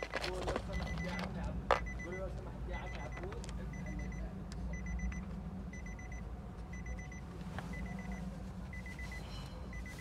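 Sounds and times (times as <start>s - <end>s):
steady low hum: 0.0s - 10.0s
electronic warning beeper: 1.8s - 10.0s.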